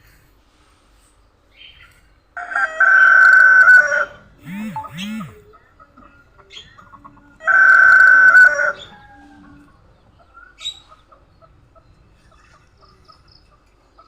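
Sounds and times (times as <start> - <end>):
rooster crowing: 2.4 - 5.5, 7.1 - 9.9.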